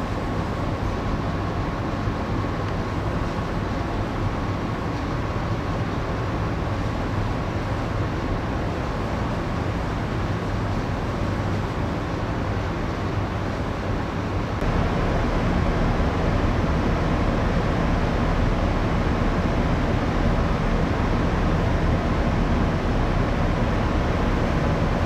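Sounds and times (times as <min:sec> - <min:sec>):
ventilation air rush: 0:06.6 - 0:25.0
ship machinery hum: 0:13.4 - 0:25.0.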